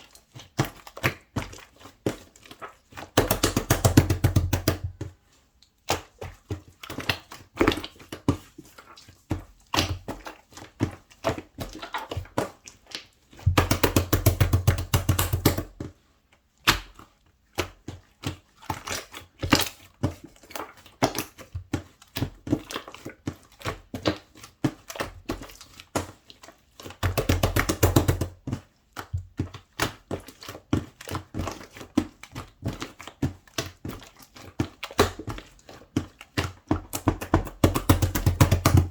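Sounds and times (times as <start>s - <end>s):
slime squelching: 0.1s - 38.9s
slime clicking and popping: 3.2s - 4.9s, 12.9s - 15.7s, 27.0s - 28.4s, 36.8s - 38.9s.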